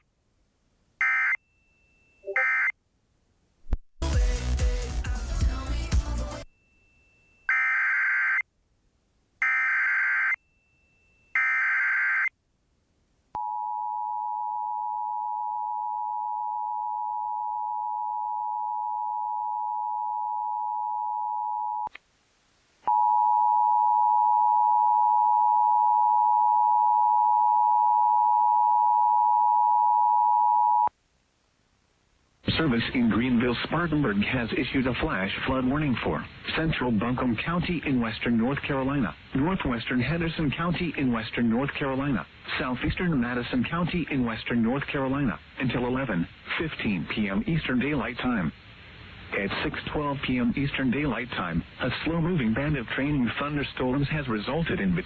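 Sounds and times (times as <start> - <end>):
two-tone alert signal: 2.2 - 2.7.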